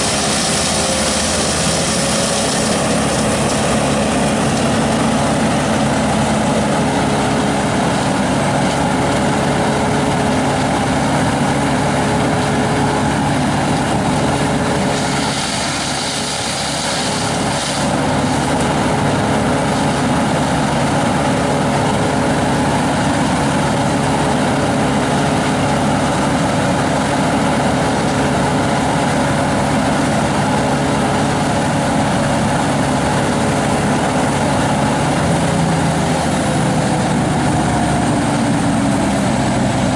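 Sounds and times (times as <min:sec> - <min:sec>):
heavy engine running: 0:00.0 - 0:39.9
hiss: 0:14.9 - 0:18.0.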